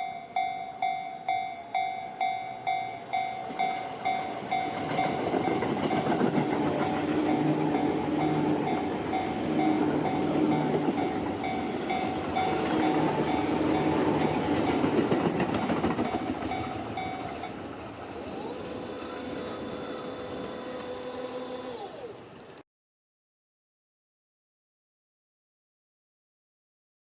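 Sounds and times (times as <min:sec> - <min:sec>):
crossing bell clanging: 0:00.0 - 0:20.9
train wheels clattering on rails: 0:03.1 - 0:18.2.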